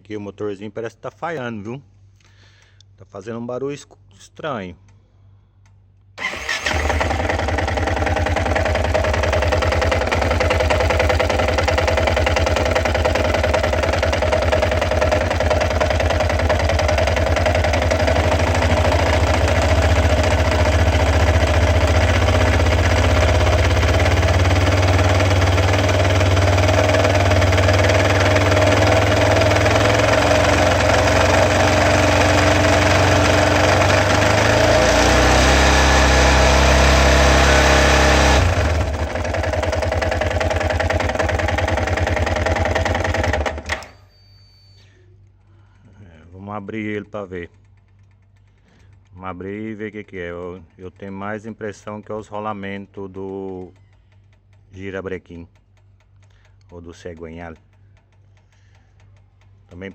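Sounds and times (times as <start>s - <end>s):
motorcycle engine idling: 6.2s - 34.7s, 38.5s - 43.8s.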